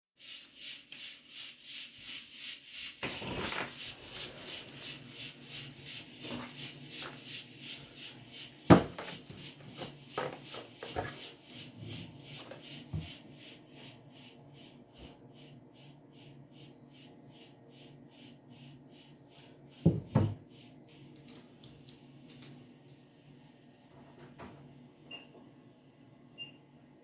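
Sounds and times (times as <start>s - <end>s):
objects knocking and rubbing: 2.8s - 13.3s, 19.8s - 20.4s.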